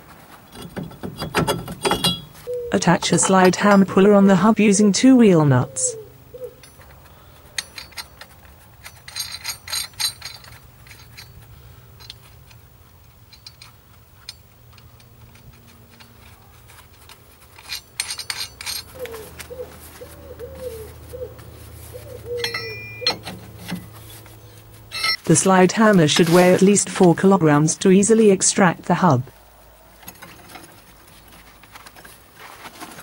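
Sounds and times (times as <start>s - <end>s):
metal clinks and taps: 0.5s - 2.4s, 6.5s - 19.2s, 22.3s - 23.9s, 24.9s - 25.2s.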